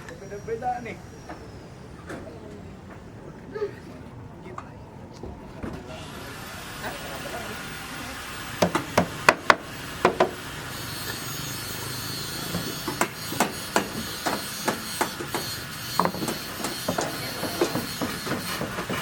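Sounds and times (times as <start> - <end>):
hammer blows: 6.0 - 19.0
light irregular knocks: 12.6 - 19.0.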